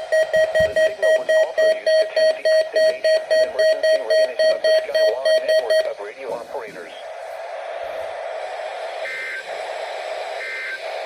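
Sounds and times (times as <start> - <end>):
rapid buzzy alarm beeps: 0.0 - 6.1, 10.4 - 10.9.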